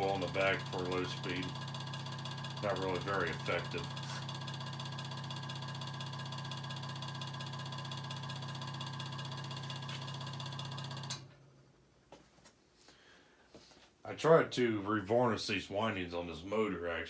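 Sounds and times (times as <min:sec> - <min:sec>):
table fan motor humming: 0:00.0 - 0:11.3.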